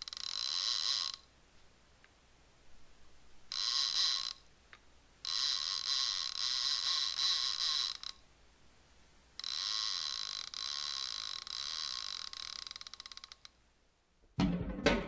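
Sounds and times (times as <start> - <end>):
music with drums: 14.4 - 15.0.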